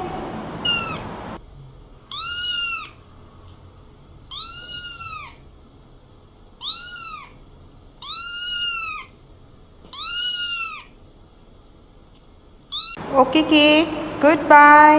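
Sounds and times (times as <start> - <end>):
cat meowing: 0.6 - 1.0, 2.1 - 3.0, 4.3 - 5.4, 6.6 - 7.4, 8.0 - 9.1, 9.9 - 11.0, 12.7 - 13.0.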